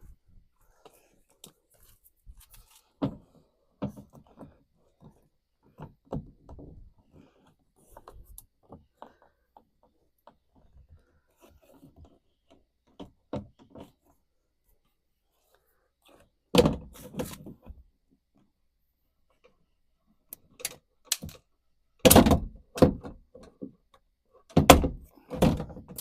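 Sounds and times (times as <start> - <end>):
tools and parts knocking and clicking: 20.4 - 26.0.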